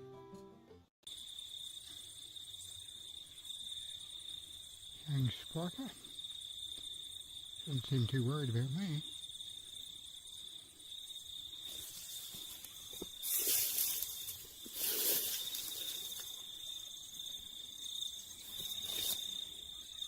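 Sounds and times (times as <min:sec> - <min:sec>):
insect trill: 0:01.0 - 0:20.0
rustling: 0:11.6 - 0:16.8, 0:18.4 - 0:19.5.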